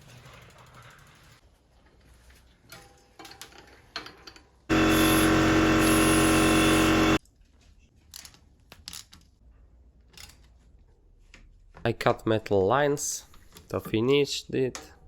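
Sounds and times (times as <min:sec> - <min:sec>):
small electric motor running: 0:04.7 - 0:07.2.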